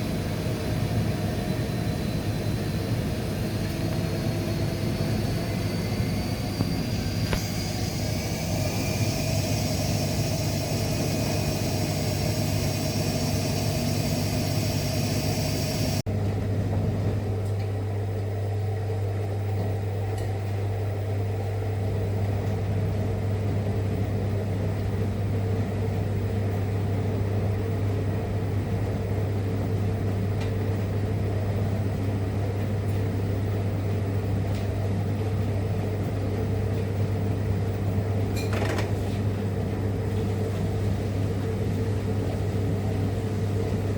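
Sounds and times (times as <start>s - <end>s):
high motor whine: 0.0s - 16.0s
washing machine low hum: 0.0s - 43.9s.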